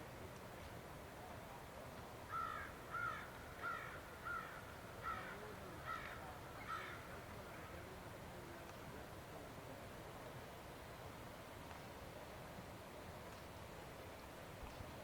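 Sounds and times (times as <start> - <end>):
faint steady hiss: 0.0 - 15.0
bird calling: 2.3 - 7.7.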